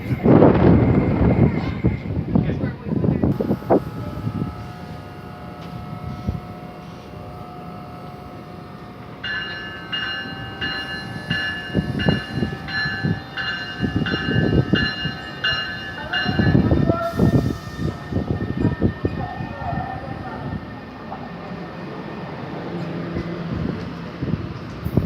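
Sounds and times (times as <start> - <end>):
train rumble: 0.0 - 25.0
wind: 0.0 - 25.0
bell ringing: 9.2 - 17.2.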